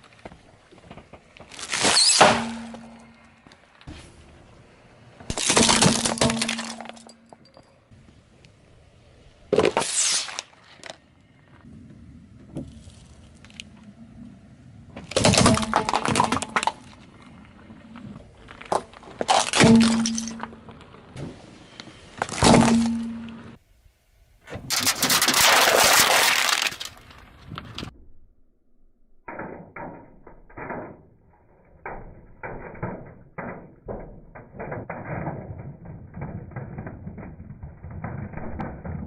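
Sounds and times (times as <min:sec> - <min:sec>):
sharp crack: 0:01.0 - 0:04.0, 0:05.2 - 0:07.5, 0:09.5 - 0:11.3, 0:15.0 - 0:23.6, 0:24.4 - 0:27.9
plastic toys crushed under tyre: 0:01.4 - 0:03.4, 0:05.2 - 0:07.5, 0:15.0 - 0:20.8, 0:22.2 - 0:23.6, 0:24.6 - 0:27.9.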